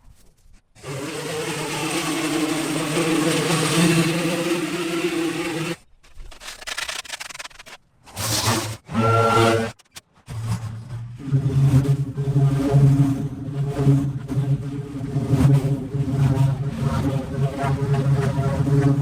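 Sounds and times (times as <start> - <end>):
small gas engine running: 0.8 - 5.8.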